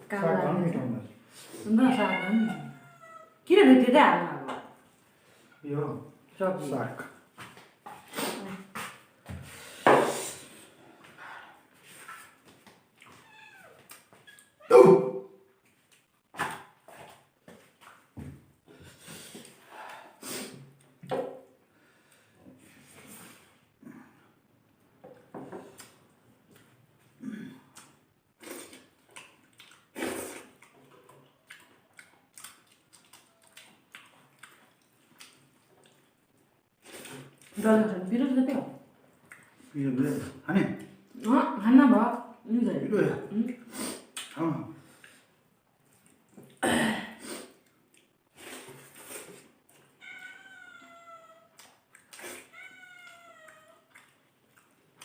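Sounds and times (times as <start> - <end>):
cat meowing: 1.7 - 3.4, 13.2 - 13.8, 50.0 - 51.7, 52.4 - 54.0
chewing and mouth smacks: 12.5 - 14.6, 15.6 - 18.1, 25.6 - 27.1, 27.7 - 37.6, 39.1 - 39.7, 43.5 - 44.4, 45.0 - 46.6, 47.6 - 49.9, 51.5 - 55.0.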